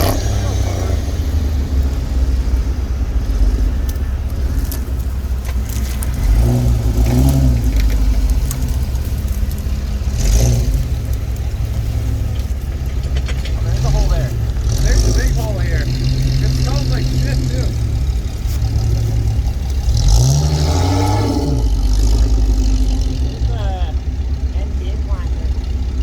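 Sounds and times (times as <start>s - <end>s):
engine running and revving: 0.0s - 26.0s
light clicks and rattles: 3.3s - 20.3s.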